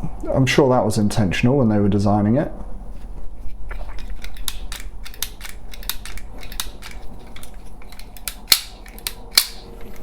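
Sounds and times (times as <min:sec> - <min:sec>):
door lock mechanism clicking: 0:04.4 - 0:10.0.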